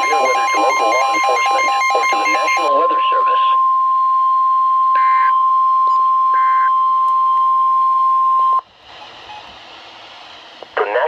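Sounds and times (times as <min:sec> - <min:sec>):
data-burst chirps: 0:00.0 - 0:02.7
steady alarm tone: 0:00.0 - 0:08.6
radio hiss: 0:10.5 - 0:11.0.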